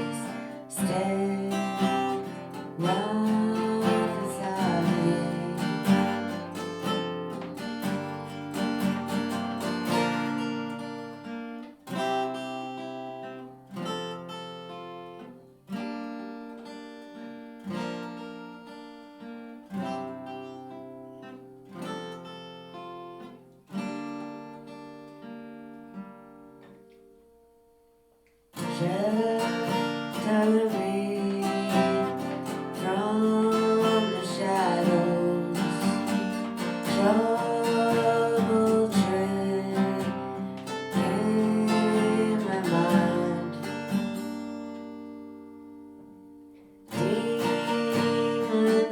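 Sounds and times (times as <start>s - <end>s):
guitar chords ringing out: 0.0s - 16.9s, 19.7s - 48.9s
acoustic guitar strumming: 0.0s - 48.9s.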